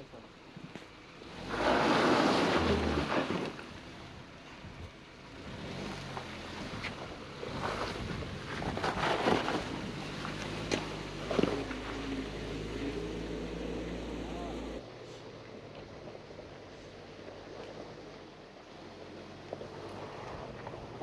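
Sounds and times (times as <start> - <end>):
car engine running slowly: 0.0 - 21.0
clicks and crunches over rocks: 6.1 - 12.1
wind buffeting microphone: 6.7 - 10.3.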